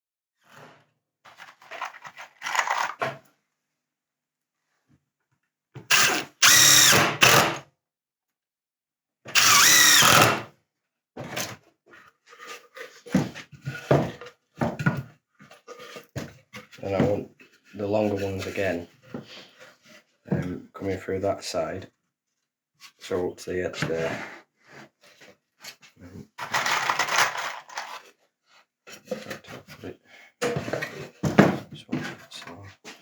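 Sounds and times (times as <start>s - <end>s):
impact driver driving screws: 5.9s - 7.6s, 9.3s - 10.5s
knocks and handling of wood: 12.4s - 20.6s, 28.9s - 33.0s.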